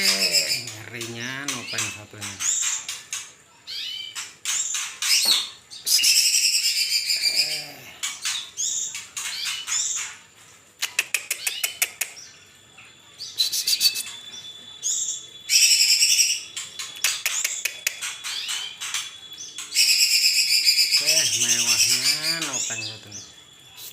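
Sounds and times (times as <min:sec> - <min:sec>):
bird singing whistled phrases: 0:13.2 - 0:23.9.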